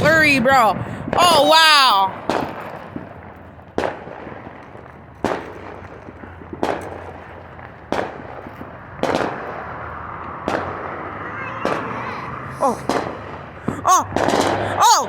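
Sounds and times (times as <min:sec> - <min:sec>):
fireworks bangs: 0:00.0 - 0:15.0.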